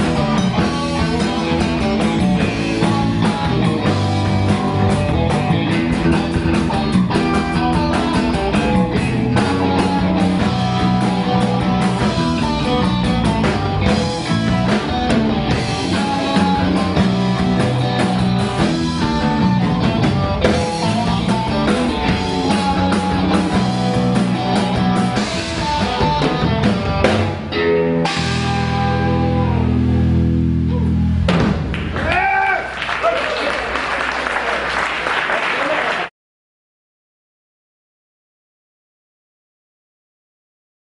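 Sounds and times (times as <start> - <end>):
blues guitar: 0.0 - 32.0
drum kit beat: 0.0 - 32.4.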